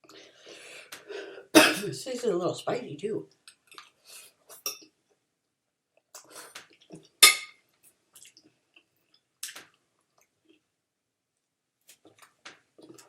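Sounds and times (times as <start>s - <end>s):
cutlery clinking on dish: 7.2s - 7.6s.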